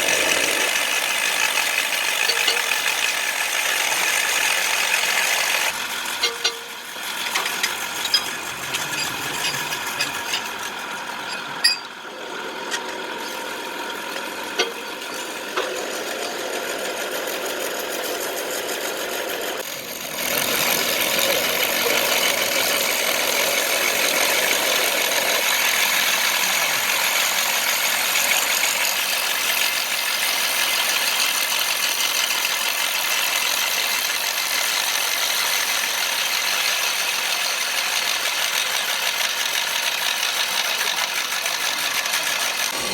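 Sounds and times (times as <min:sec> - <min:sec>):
power tool motor whining: 0:00.0 - 0:42.9.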